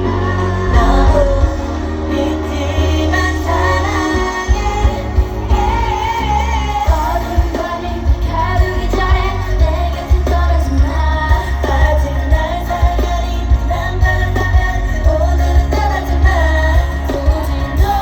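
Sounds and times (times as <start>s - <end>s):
heavy pulsing bass beat: 0.0s - 18.0s
woman singing with vibrato: 0.0s - 18.0s.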